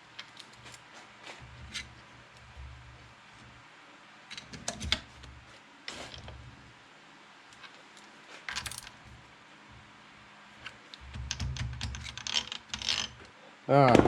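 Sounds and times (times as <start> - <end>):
metal nut clicking and rattling: 10.6 - 13.3.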